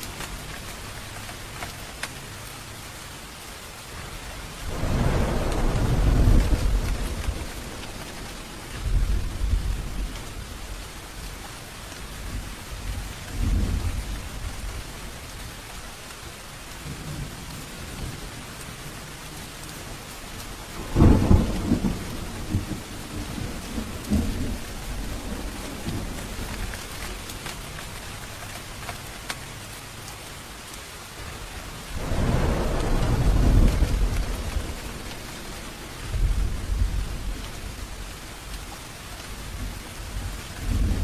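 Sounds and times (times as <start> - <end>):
steady rain: 0.0 - 41.0
rolling thunder: 4.6 - 10.8, 20.6 - 27.2, 31.8 - 38.6, 39.4 - 41.0.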